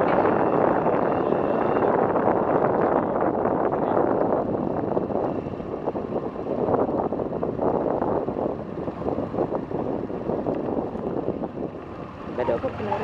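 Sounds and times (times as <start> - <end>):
rushing water roar: 0.0 - 13.0.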